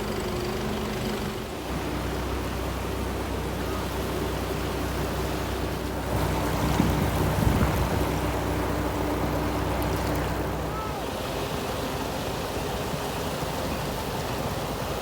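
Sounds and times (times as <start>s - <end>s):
sea surf: 2.1s - 15.0s
wind noise: 6.1s - 8.4s.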